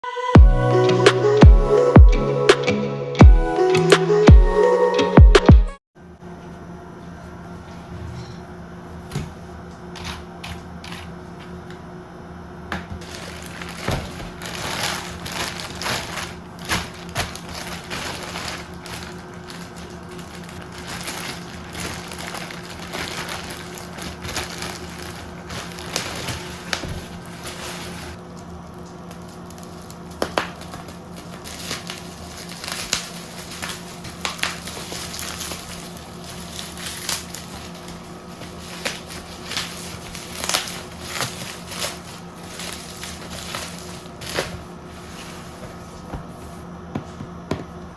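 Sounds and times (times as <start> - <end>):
packaging rustling and crinkling: 13.0 - 46.7.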